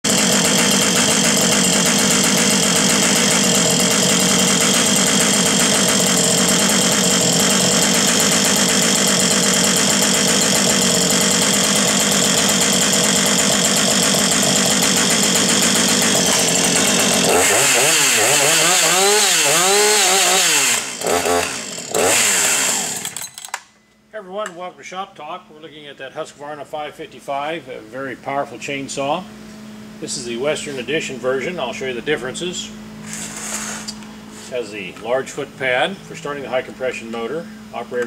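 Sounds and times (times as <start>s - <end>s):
chainsaw engine revving: 0.0s - 23.6s.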